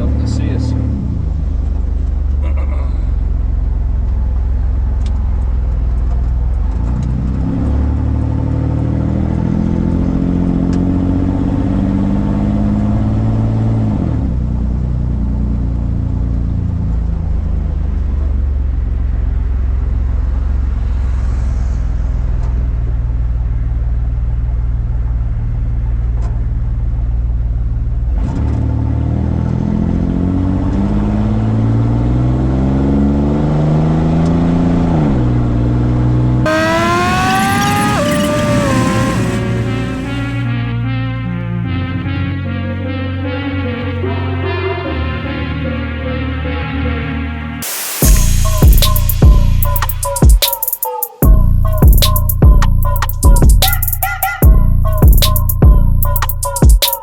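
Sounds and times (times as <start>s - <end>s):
jeep engine revving while driving: 6.7s - 14.5s, 28.1s - 40.5s.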